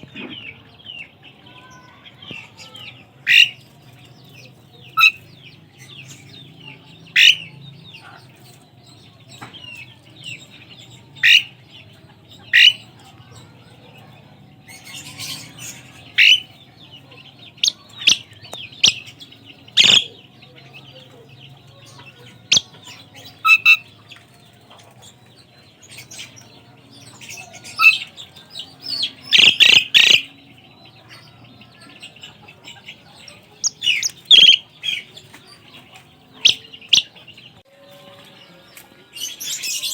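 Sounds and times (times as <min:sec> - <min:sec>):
starling whistled and harsh calls: 0:03.3 - 0:03.6, 0:04.9 - 0:05.3, 0:07.1 - 0:07.5, 0:11.2 - 0:11.5, 0:12.5 - 0:12.9, 0:14.7 - 0:16.5, 0:17.6 - 0:19.2, 0:19.8 - 0:20.2, 0:22.5 - 0:23.8, 0:27.2 - 0:28.2, 0:28.8 - 0:30.3, 0:33.6 - 0:35.1, 0:36.4 - 0:37.2.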